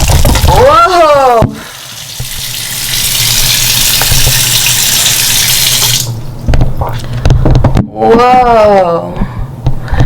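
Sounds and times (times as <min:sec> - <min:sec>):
water running from a tap: 0:00.0 - 0:06.2.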